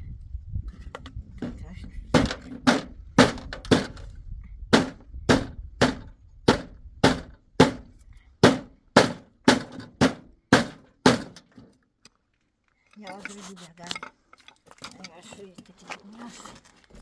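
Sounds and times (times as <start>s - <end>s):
hammer blows on wood: 1.4s - 4.1s, 4.7s - 11.4s.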